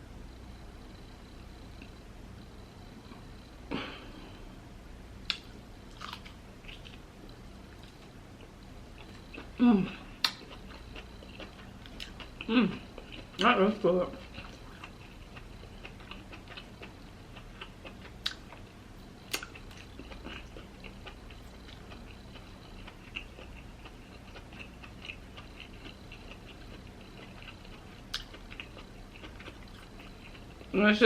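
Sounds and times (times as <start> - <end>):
wet chewing clicks: 10.2 - 13.5, 14.2 - 18.6, 19.2 - 30.7.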